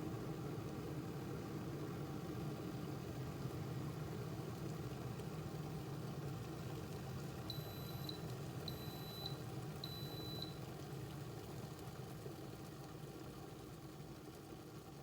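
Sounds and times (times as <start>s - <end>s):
kettle beeping: 7.5s - 10.6s
steady low hum: 7.5s - 10.6s.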